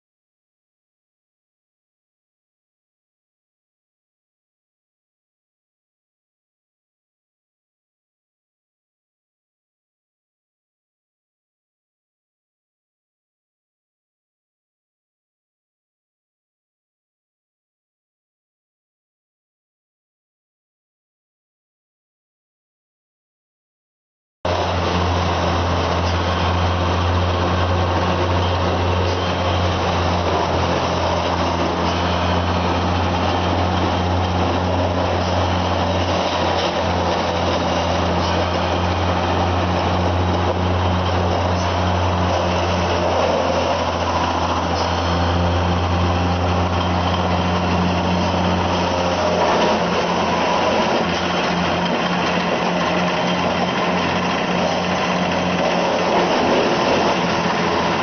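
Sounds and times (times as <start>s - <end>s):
wood chipper running: 24.5s - 58.0s.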